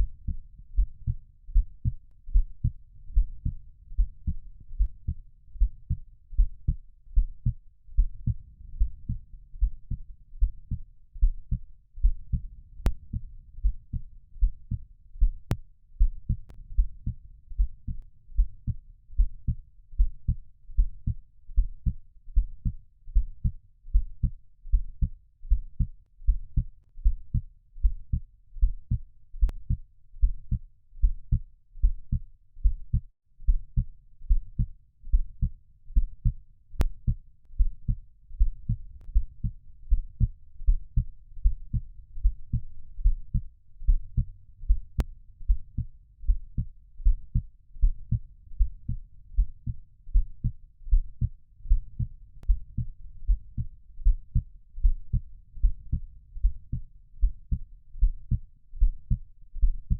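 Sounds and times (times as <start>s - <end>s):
faint low hum: 0.0s - 59.9s
heartbeat thumps: 0.0s - 59.9s.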